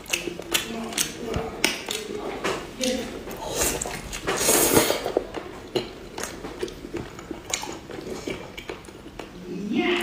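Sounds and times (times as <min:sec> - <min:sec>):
chewing clicks: 0:00.0 - 0:02.1.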